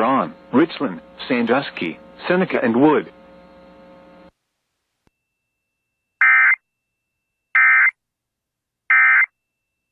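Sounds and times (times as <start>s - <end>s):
faint steady hum: 0.0s - 9.9s
buzzy digital modem tone squawk: 6.2s - 6.6s, 7.6s - 7.9s, 8.9s - 9.3s.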